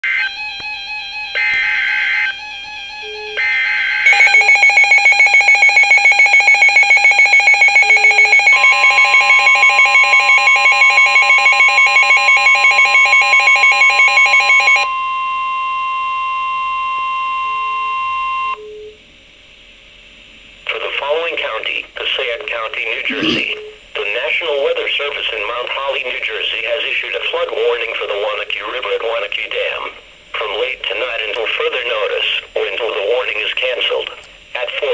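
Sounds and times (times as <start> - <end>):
pulsing electronic alarm beeping: 1.0 - 14.8.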